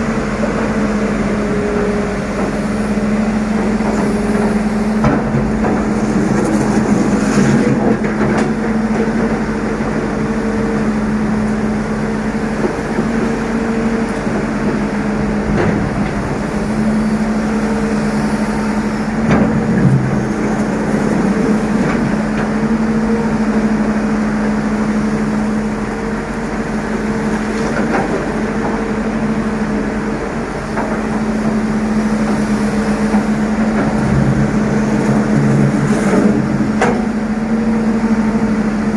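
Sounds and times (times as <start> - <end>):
diesel engine running: 0.0 - 38.9
machine knocks and clanks: 5.0 - 9.5, 14.5 - 16.8, 19.2 - 22.6, 30.6 - 37.3.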